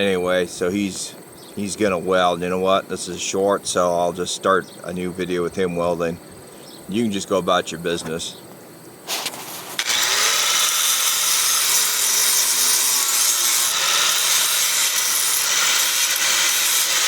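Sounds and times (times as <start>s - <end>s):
welding arc crackling: 9.1s - 17.0s.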